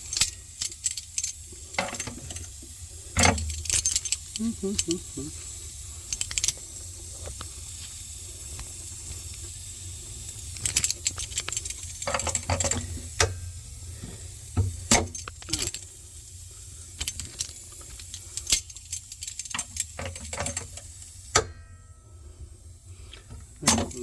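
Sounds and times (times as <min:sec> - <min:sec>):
hand tools clinking on copper tubing: 0:00.0 - 0:05.4, 0:06.0 - 0:07.4, 0:10.3 - 0:13.5, 0:14.6 - 0:16.0, 0:16.9 - 0:21.8, 0:23.3 - 0:24.0
faint hiss: 0:00.0 - 0:21.4.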